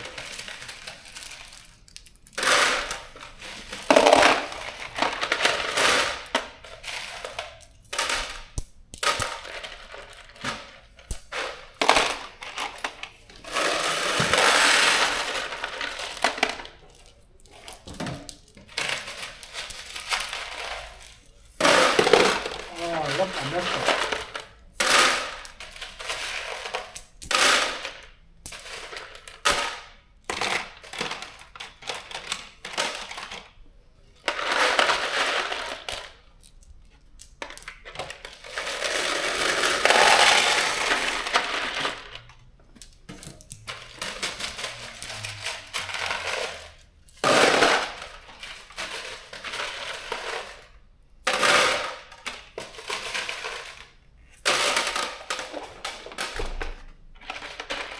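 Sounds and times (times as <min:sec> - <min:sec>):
metal bolts clinking and rattling: 0:00.0 - 0:27.9, 0:34.3 - 0:50.3.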